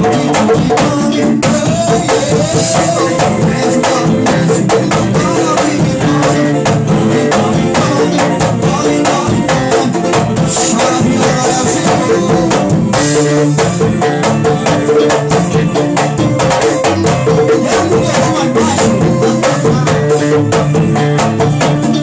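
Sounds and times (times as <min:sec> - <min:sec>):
instrumental band music: 0:00.0 - 0:22.0.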